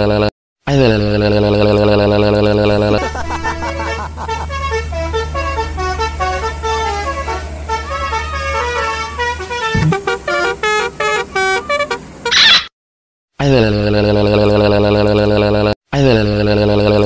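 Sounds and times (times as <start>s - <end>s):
multi-tone bus horn melody: 2.6s - 12.4s
low engine rumble: 2.7s - 10.4s.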